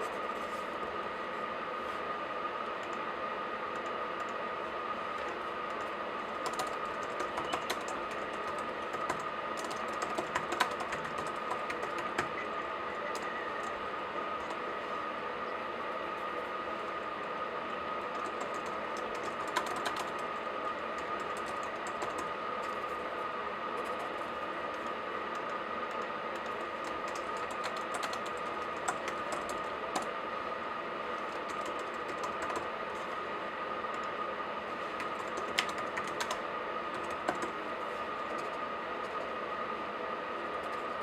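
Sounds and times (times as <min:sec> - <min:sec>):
laptop keyboard typing: 0:05.1 - 0:13.8, 0:14.4 - 0:14.7, 0:18.0 - 0:22.8, 0:23.8 - 0:30.2, 0:31.1 - 0:32.8, 0:34.9 - 0:37.6, 0:38.2 - 0:39.4.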